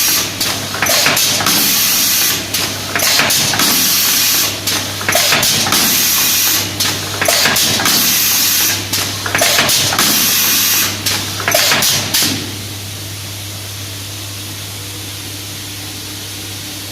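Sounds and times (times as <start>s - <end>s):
machine hissing with clicks: 0.0s - 12.5s
steady low machine hum: 0.0s - 16.9s.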